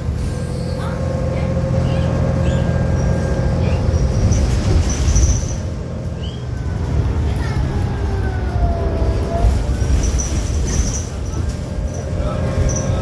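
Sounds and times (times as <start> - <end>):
bus drive whine: 0.0 - 13.0
bus engine drone: 0.0 - 13.0
high squeaks from bus body: 1.8 - 6.5, 9.8 - 13.0.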